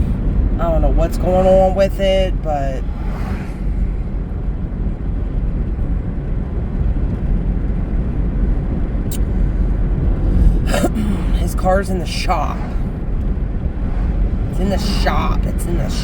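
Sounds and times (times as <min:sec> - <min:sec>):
car cabin road noise: 0:00.0 - 0:16.0.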